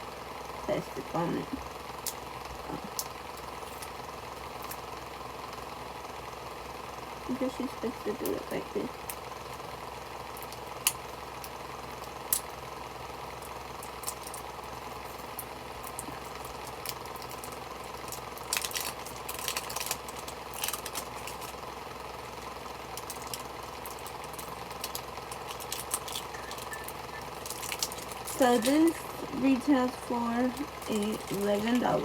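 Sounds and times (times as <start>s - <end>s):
steady background hum: 0.0s - 32.0s
plastic package clicks and crinkles: 13.7s - 14.5s, 15.2s - 28.9s, 30.6s - 31.8s.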